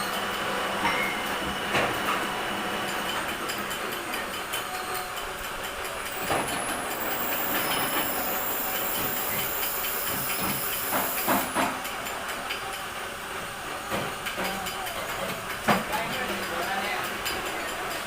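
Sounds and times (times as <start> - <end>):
metal lathe running with a hiss: 0.0 - 18.0.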